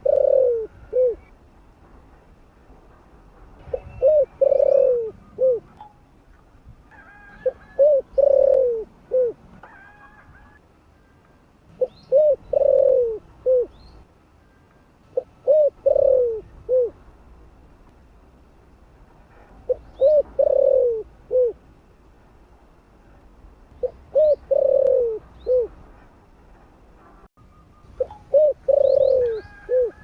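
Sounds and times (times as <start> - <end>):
dove cooing: 0.0 - 1.3, 3.7 - 5.8, 7.0 - 10.6, 11.7 - 13.8, 15.1 - 17.0, 19.6 - 21.6, 23.8 - 25.8, 28.0 - 30.0.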